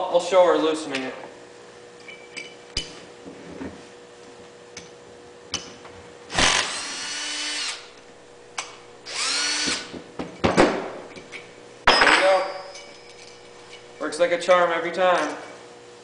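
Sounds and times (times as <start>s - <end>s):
cordless drill whining: 6.3s - 8.0s, 9.1s - 9.9s.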